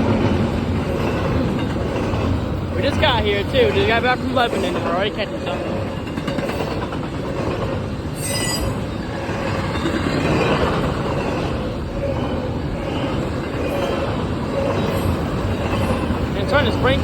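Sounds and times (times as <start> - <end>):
train wheels rumbling on rail: 0.0 - 17.0
high wheel squeal: 8.2 - 10.6.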